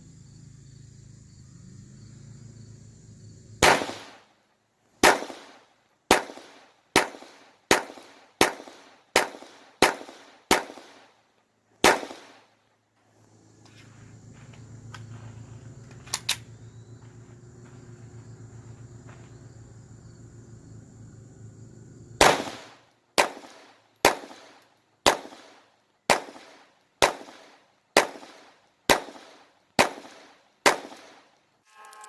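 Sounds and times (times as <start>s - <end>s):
pistol shots: 3.6s - 4.3s, 5.0s - 11.1s, 11.8s - 12.5s, 22.2s - 31.3s
low background hum: 10.9s - 32.0s.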